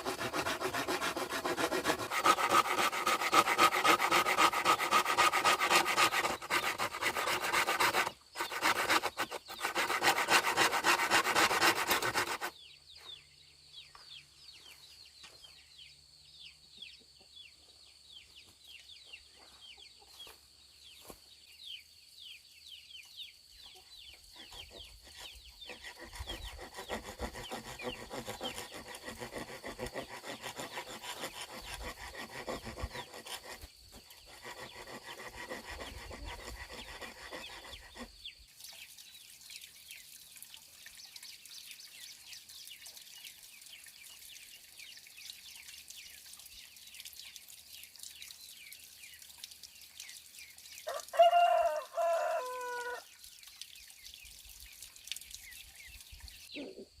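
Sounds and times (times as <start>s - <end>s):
rasping strokes on wood: 0.0s - 12.5s, 24.4s - 38.2s
rooster crowing: 50.9s - 53.1s.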